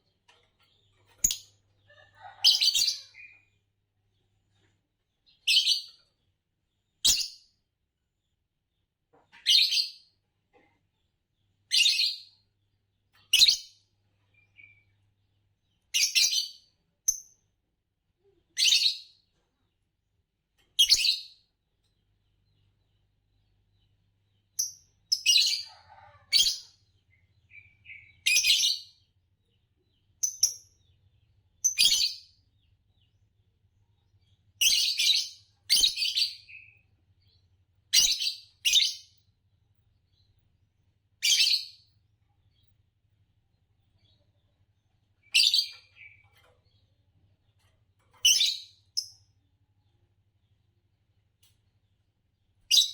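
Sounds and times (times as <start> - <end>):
lovebirds chirping: 48.2 - 50.6, 52.6 - 52.9.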